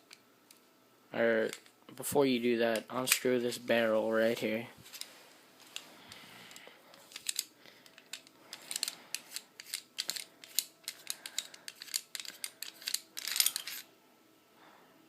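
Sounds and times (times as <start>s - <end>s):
pistol parts clicking and scraping: 4.8s - 13.9s.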